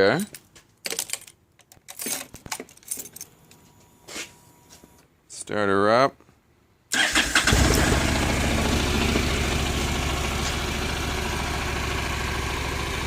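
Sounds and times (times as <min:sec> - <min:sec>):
motorcycle engine idling: 0:07.5 - 0:13.0.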